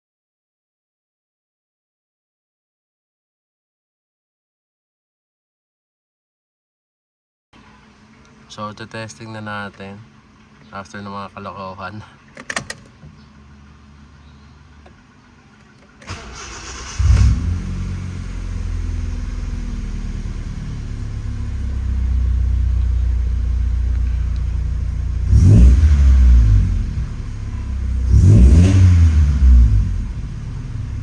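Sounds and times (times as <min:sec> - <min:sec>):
car engine idling and revving: 0:13.4 - 0:31.0
car engine cranking: 0:15.6 - 0:31.0.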